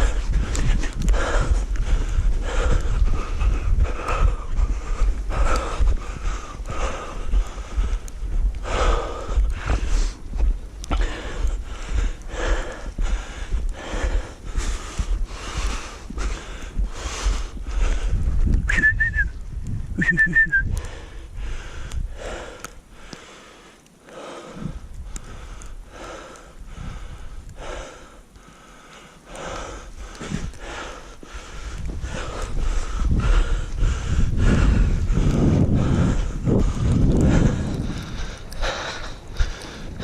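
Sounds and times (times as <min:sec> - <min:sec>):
footsteps in snow: 0:00.0 - 0:18.6
person breathing hard: 0:00.0 - 0:18.6, 0:20.7 - 0:40.0
wind on microphone: 0:00.0 - 0:23.1, 0:24.5 - 0:28.1, 0:29.3 - 0:40.0.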